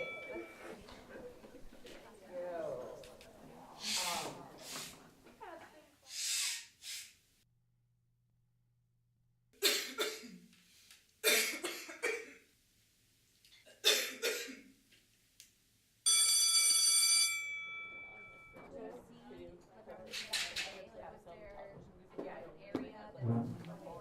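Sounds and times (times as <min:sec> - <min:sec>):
person coughing: 0:09.6 - 0:10.5, 0:11.2 - 0:12.4, 0:13.6 - 0:14.7.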